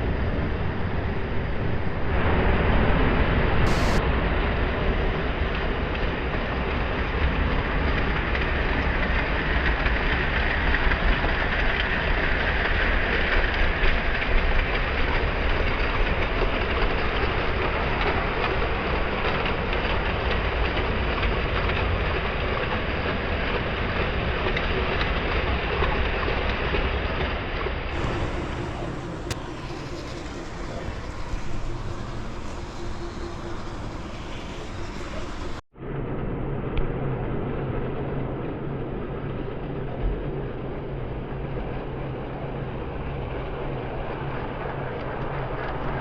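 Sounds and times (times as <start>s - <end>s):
model train whirring: 3.7s - 4.0s, 28.0s - 35.6s.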